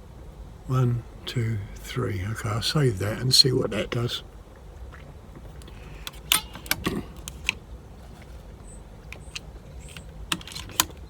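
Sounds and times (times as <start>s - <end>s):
air rifle handling clicks and knocks: 5.4s - 8.4s, 9.0s - 11.0s.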